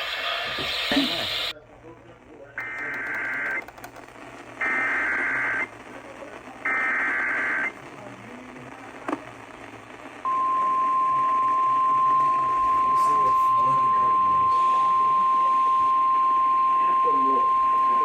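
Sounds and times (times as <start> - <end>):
steady warning alarm tone: 10.3 - 18.0.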